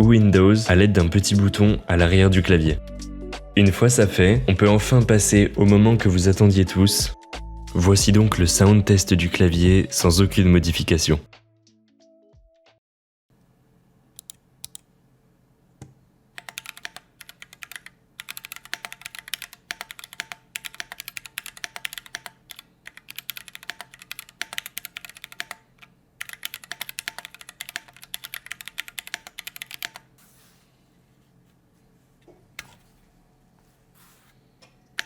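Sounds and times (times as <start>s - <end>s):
mechanical keyboard typing: 16.4s - 30.1s.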